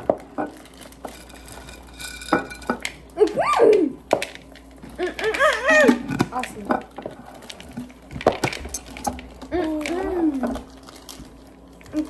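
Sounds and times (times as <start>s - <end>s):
bowls and utensils clinking: 0.0s - 12.0s.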